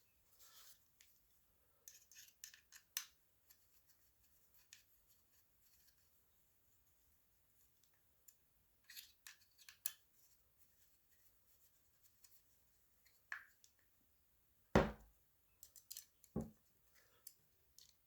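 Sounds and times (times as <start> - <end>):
sharp knock: 14.8 - 15.0.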